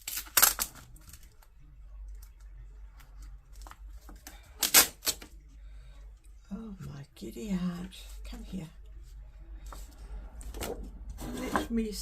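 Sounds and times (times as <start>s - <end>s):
paper rustling on a desk: 9.7s - 11.7s.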